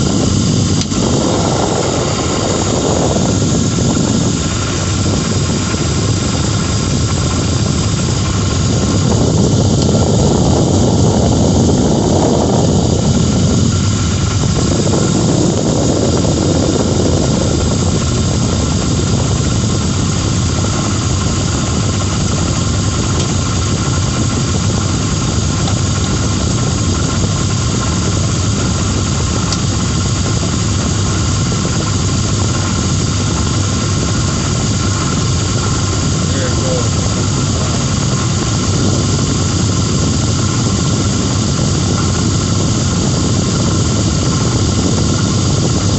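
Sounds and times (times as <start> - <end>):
car engine running: 0.0 - 45.9
high squeal and whir: 0.0 - 45.9.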